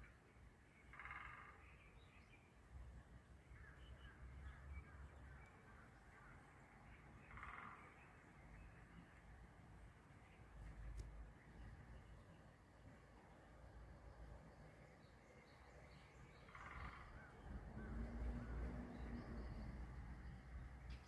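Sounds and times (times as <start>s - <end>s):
small birds chirping: 0.0s - 21.0s
crow cawing: 16.5s - 17.3s.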